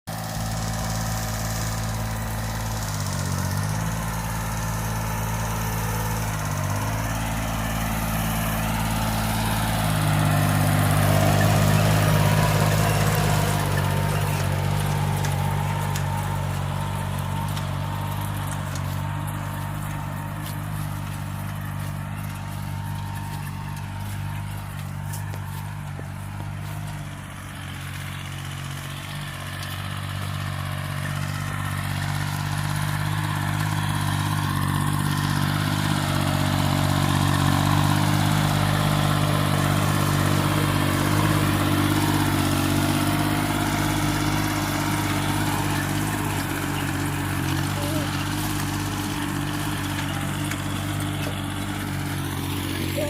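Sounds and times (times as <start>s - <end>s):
small tractor engine running: 0.0s - 53.0s.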